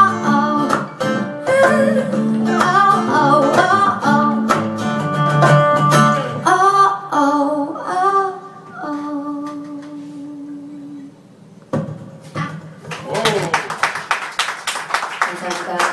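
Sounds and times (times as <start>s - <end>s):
person singing: 0.0s - 11.1s
acoustic guitar: 0.0s - 13.4s
audience clapping: 12.8s - 15.9s.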